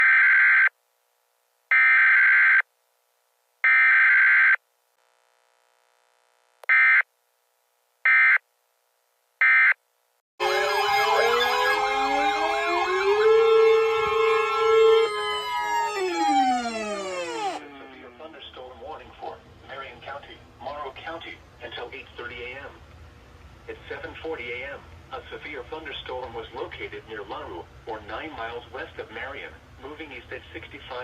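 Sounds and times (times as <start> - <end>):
siren-like alert tone: 10.4 - 18.2
buzzy data bursts: 10.5 - 17.6.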